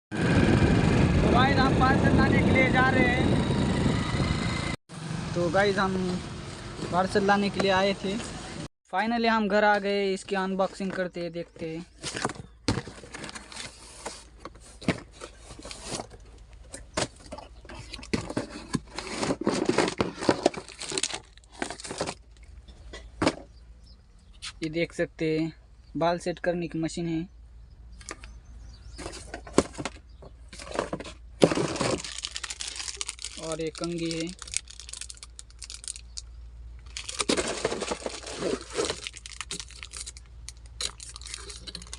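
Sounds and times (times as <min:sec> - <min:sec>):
packaging tearing and crinkling: 0:18.9 - 0:22.3, 0:31.4 - 0:41.9.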